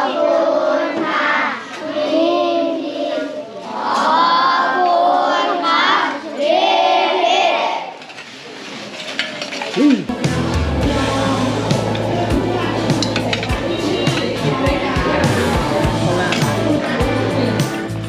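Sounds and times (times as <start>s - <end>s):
children chanting in unison: 0.0s - 8.0s
low hum: 10.1s - 18.0s.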